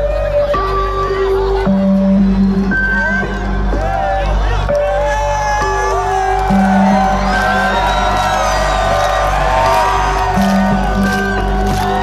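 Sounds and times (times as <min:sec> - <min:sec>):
electronic dance music: 0:00.1 - 0:12.0
crowd whooping and shouting: 0:03.0 - 0:12.0.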